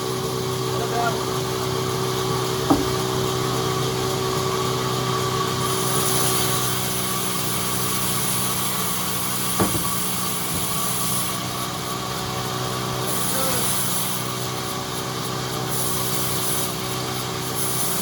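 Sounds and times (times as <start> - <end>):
sawmill machinery humming: 0.0 - 18.0
sharp knock: 2.7 - 3.2, 9.6 - 10.8
high hiss: 5.6 - 12.0, 12.9 - 14.5.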